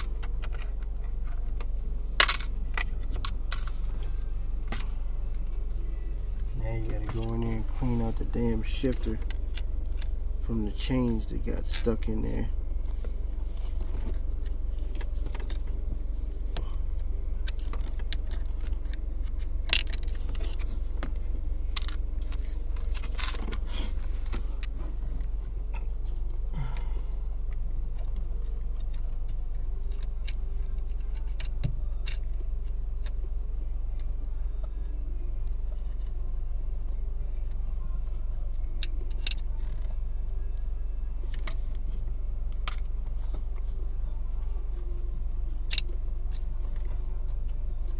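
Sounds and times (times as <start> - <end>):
low hum: 0.0 - 47.9
coins clinking and scraping: 2.2 - 2.9, 22.8 - 23.5.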